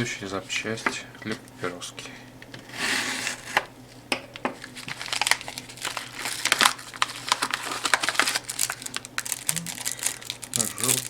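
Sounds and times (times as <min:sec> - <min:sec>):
plastic bag crinkling: 0:04.6 - 0:11.0.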